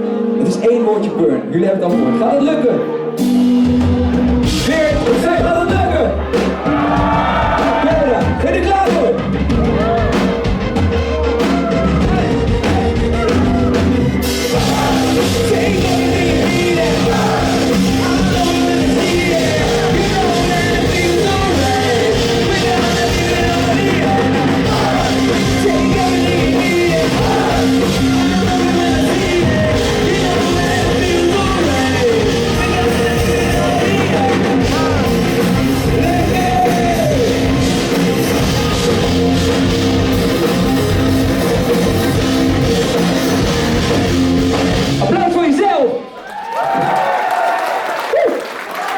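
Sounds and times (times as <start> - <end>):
live rock band playing: 1.8 - 46.1
audience singing along: 6.4 - 7.9, 14.2 - 37.3.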